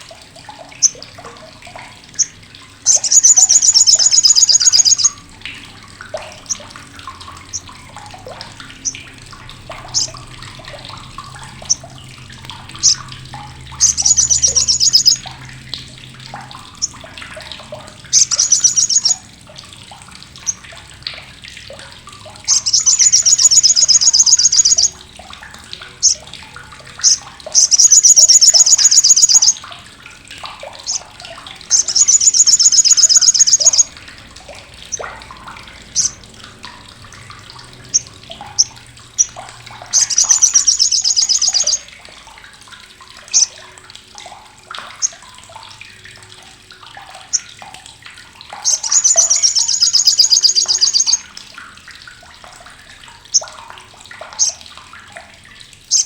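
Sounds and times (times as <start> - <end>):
bird chattering call: 2.9 - 5.1, 10.0 - 10.2, 12.8 - 13.0, 13.8 - 15.2, 18.1 - 19.2, 22.5 - 25.0, 27.0 - 29.6, 31.7 - 33.9, 40.0 - 41.9, 48.7 - 51.2.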